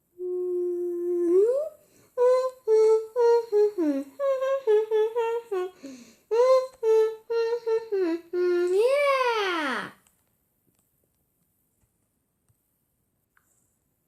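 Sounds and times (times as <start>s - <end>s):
high-pitched voice humming: 0.0s - 10.0s.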